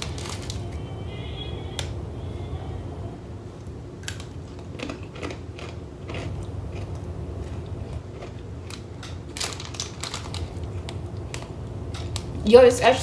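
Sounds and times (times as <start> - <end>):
low hum: 0.0 - 4.7
crunchy chewing: 4.0 - 12.3.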